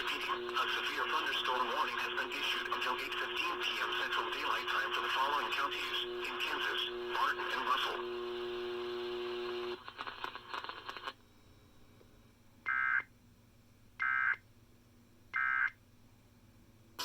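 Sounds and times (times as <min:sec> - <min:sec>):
crackly static: 0:00.0 - 0:17.0
steady multi-tone hum: 0:00.0 - 0:17.0
harsh digital data squawks: 0:12.7 - 0:13.1, 0:14.0 - 0:14.4, 0:15.4 - 0:15.8.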